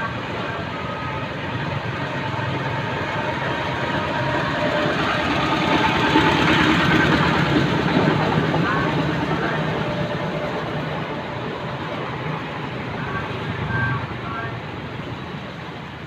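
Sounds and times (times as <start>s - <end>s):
engine running: 0.0s - 16.0s
faint voices: 6.5s - 11.3s, 12.3s - 14.9s.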